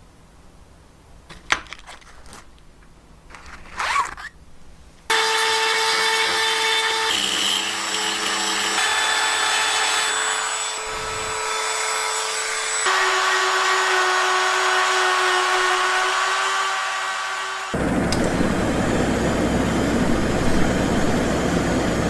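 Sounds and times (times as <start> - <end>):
appliance motor humming and whining: 5.1 - 22.0.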